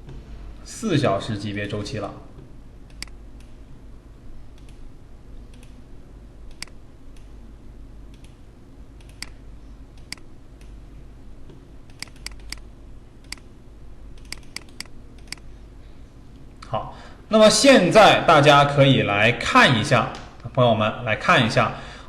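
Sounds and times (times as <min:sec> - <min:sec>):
low steady hum: 0:00.0 - 0:22.0
computer mouse clicks: 0:02.9 - 0:03.6, 0:04.5 - 0:04.9, 0:05.5 - 0:05.8, 0:06.5 - 0:07.3, 0:08.1 - 0:08.4, 0:09.0 - 0:09.4, 0:10.0 - 0:10.8, 0:11.5 - 0:12.6, 0:13.2 - 0:13.5, 0:14.2 - 0:15.5.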